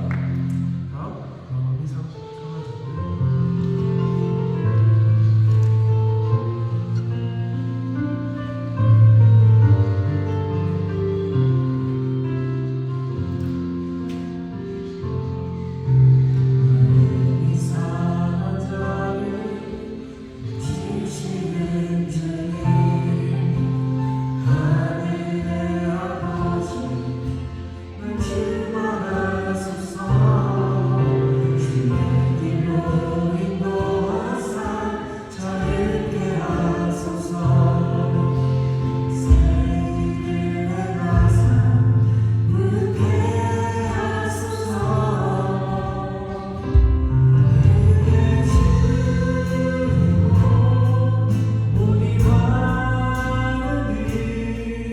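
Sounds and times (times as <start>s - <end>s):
acoustic guitar: 0.0s - 54.9s
keyboards: 0.0s - 54.9s
group singing in harmony: 13.0s - 54.9s
drums with cymbals: 46.8s - 52.8s.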